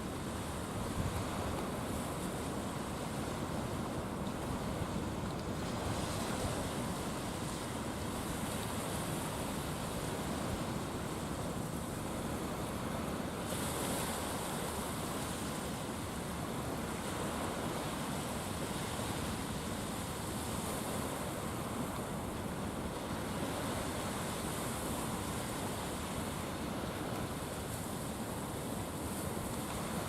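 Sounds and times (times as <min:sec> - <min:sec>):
wind noise on microphone: 0:00.0 - 0:22.0
sea waves washing: 0:00.0 - 0:30.0.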